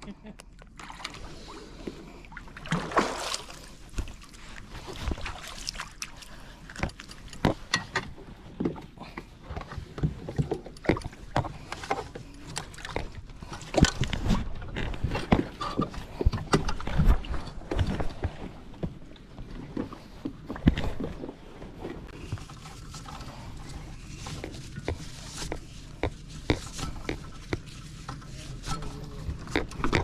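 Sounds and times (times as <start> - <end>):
knocks and clunks on kayak: 12.8 - 21.3.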